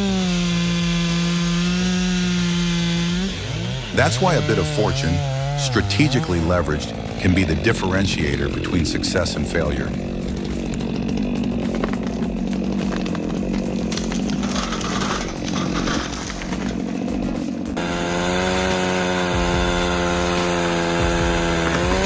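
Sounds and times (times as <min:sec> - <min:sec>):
chainsaw cutting: 0:00.0 - 0:22.0
chainsaw engine high-revving: 0:00.0 - 0:22.0
rapid clicks and knocks: 0:08.5 - 0:22.0.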